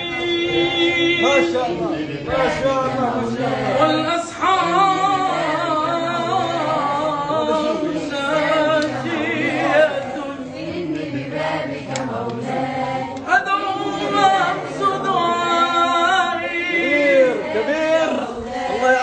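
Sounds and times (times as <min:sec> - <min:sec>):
men singing devotional chant: 0:00.0 - 0:19.0.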